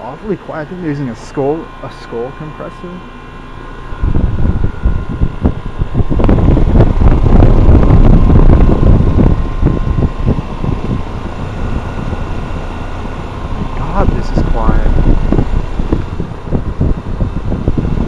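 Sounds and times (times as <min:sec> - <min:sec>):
air conditioner hum: 0:00.0 - 0:18.0
wind buffeting microphone: 0:03.6 - 0:18.0.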